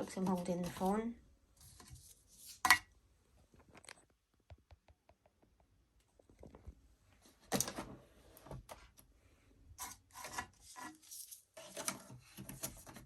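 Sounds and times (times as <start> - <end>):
rubbing and scraping handling noises: 0.0 - 3.9, 9.7 - 13.0.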